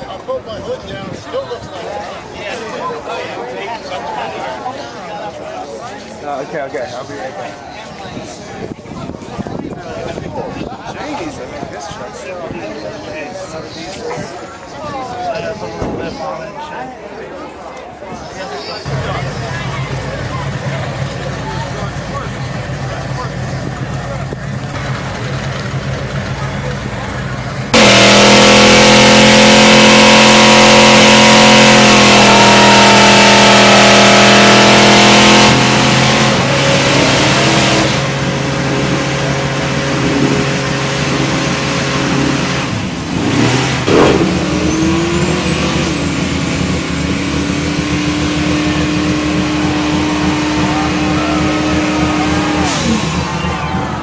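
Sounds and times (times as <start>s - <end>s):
car engine revving high: 18.9s - 54.0s
other engines running: 18.9s - 54.0s.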